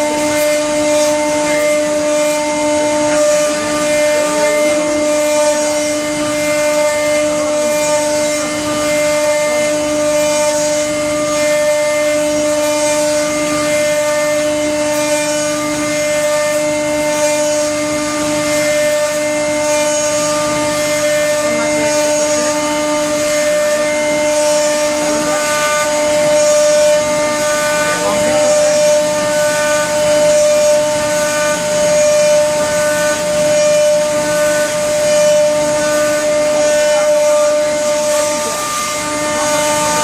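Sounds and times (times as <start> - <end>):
cnc router spindle whining: 0.0 - 40.0.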